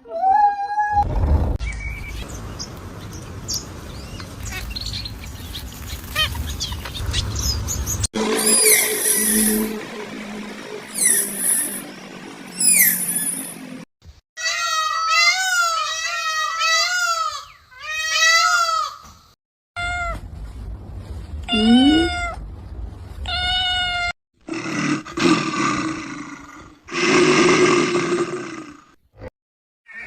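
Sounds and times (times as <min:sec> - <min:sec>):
cats meowing and yowling: 0:14.4 - 0:18.9.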